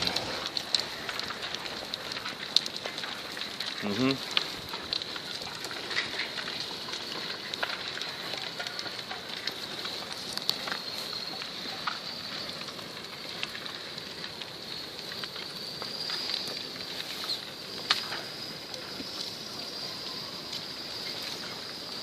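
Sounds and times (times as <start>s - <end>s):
earth and rock crackling and trickling: 0.0s - 22.0s
small cracks and clicks: 0.0s - 22.0s
steady high-pitched hiss: 0.0s - 22.0s.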